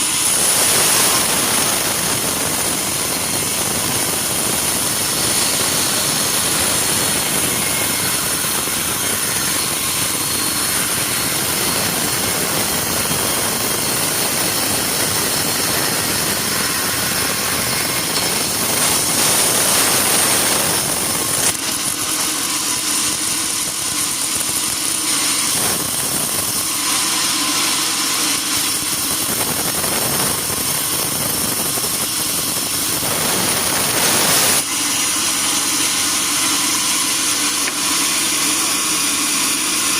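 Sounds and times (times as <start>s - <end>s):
sawmill machinery running: 0.0s - 39.9s.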